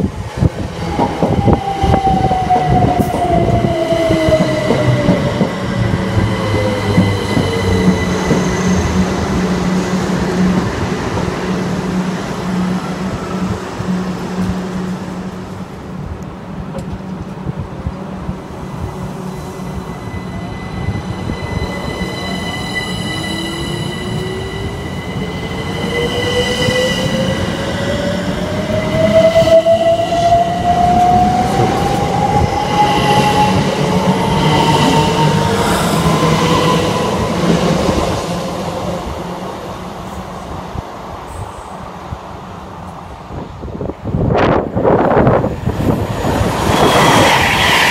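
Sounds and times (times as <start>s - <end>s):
wheels rumbling on rail: 0.0s - 29.7s.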